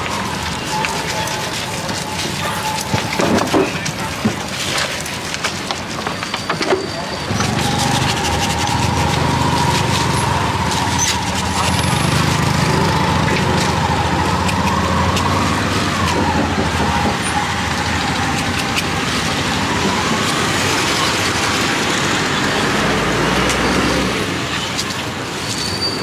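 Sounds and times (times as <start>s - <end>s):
wavering whine: 0.0s - 4.2s
vehicle engines running: 0.0s - 26.0s.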